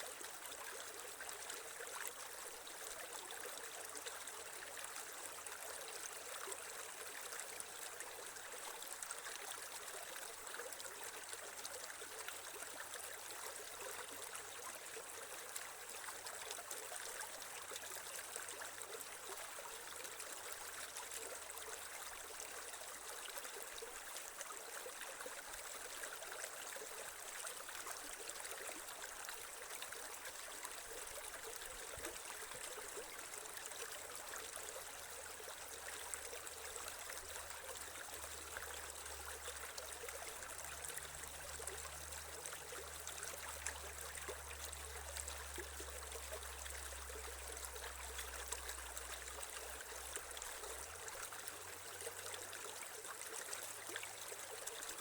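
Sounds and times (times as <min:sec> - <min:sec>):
creek water trickling over stones: 0:00.0 - 0:55.0.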